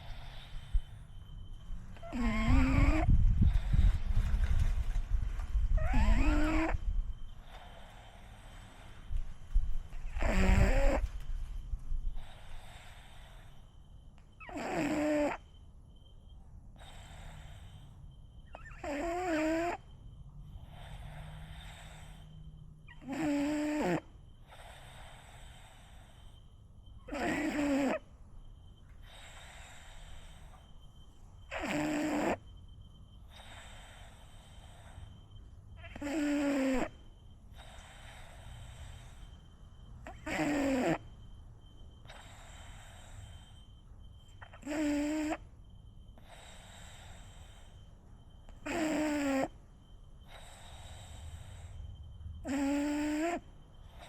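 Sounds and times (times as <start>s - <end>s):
dog breathing: 0.0s - 54.0s
dog snoring: 1.9s - 4.4s, 5.7s - 9.1s, 9.9s - 11.2s, 12.1s - 13.5s, 14.4s - 15.5s, 16.7s - 26.4s, 27.0s - 28.1s, 29.0s - 30.7s, 31.4s - 32.5s, 33.2s - 35.2s, 35.8s - 39.4s, 40.0s - 41.2s, 42.0s - 45.5s, 46.2s - 49.6s, 50.2s - 54.0s.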